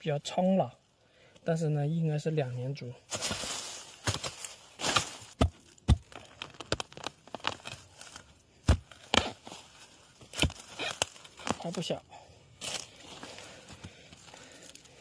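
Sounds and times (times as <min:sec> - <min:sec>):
crackling and rustling: 0:03.1 - 0:12.0.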